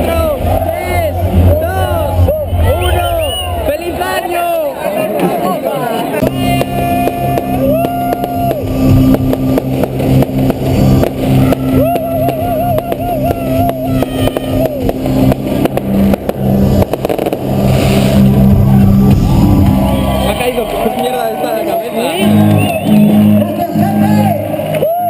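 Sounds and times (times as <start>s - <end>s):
wavering melody line: 0.0s - 4.6s
held bass notes: 0.0s - 4.8s, 6.2s - 25.0s.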